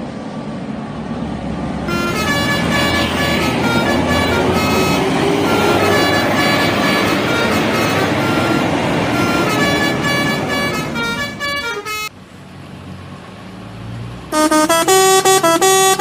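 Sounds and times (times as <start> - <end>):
traffic noise: 0.0 - 16.0
engine hum rising in pitch: 0.8 - 16.0
bus horn playing melody: 1.8 - 12.1, 14.3 - 16.0.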